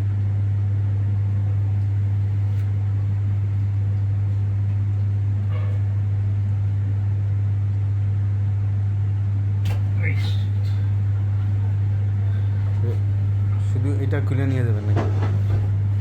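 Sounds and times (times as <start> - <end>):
deep electrical hum: 0.0 - 16.0.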